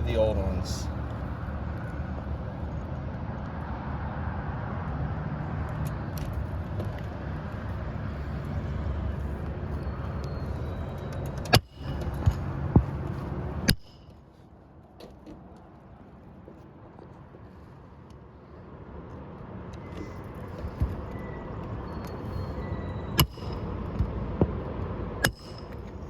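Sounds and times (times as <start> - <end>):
hammer driving nails: 23.2 - 23.8, 25.2 - 26.0.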